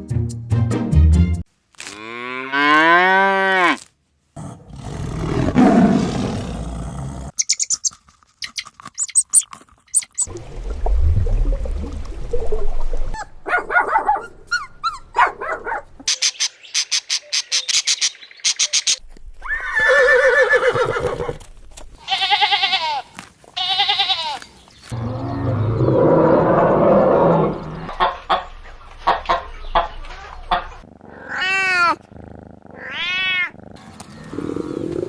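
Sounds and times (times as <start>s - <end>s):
wavering bleats: 22.0s - 24.4s.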